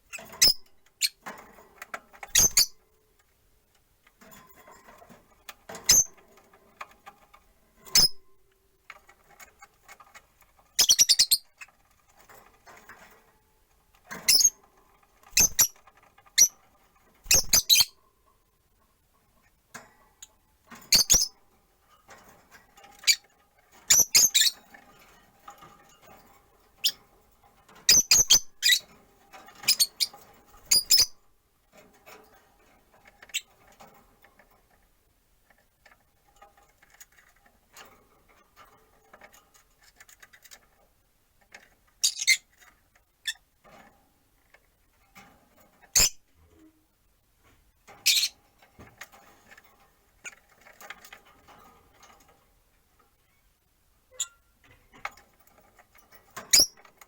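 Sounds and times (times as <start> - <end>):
lovebirds chirping: 10.8 - 11.5.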